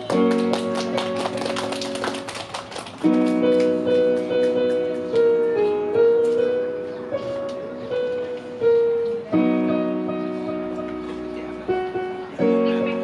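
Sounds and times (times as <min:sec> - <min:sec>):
electronic keyboard chords and melody: 0:03.0 - 0:13.0.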